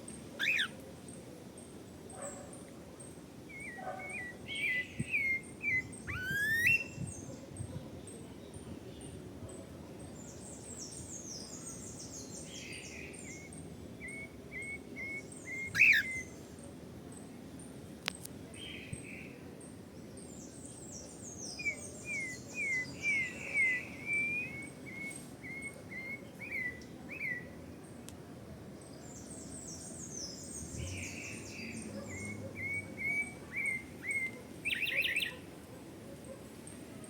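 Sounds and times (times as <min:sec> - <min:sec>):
thrush singing whistled notes: 0:21.6 - 0:26.8.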